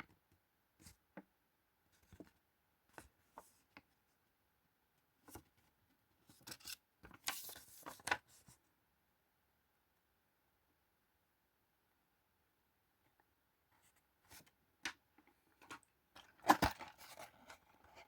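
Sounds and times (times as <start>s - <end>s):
paper and cardboard rustling: 6.3s - 8.6s, 15.6s - 18.0s.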